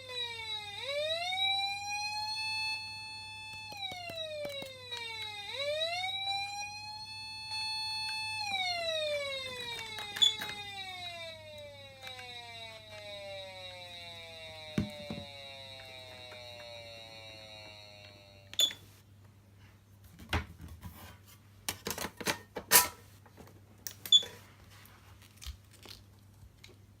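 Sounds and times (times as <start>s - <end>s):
siren sliding down in pitch: 0.0s - 18.8s.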